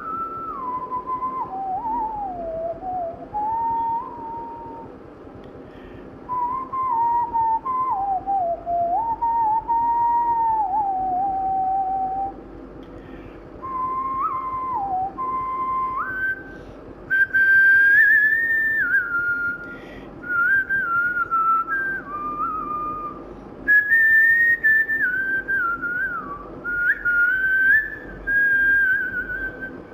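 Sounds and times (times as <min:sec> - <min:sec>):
person whistling a melody: 0:00.0 - 0:04.9, 0:06.3 - 0:12.4, 0:13.6 - 0:29.9.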